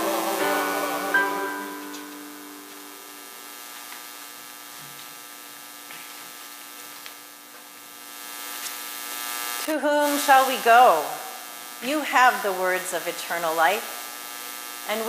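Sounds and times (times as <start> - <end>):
music chord: 0.0 - 3.5
mains hum buzz: 0.0 - 15.0.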